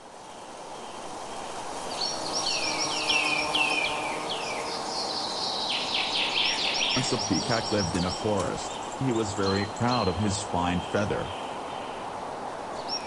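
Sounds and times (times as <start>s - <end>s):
forest hiss: 0.0s - 13.0s.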